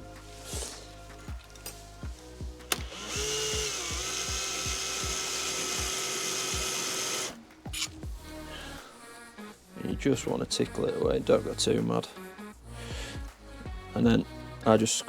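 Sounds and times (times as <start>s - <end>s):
background music with beat: 0.0s - 15.0s
electric drill grinding: 2.6s - 8.0s.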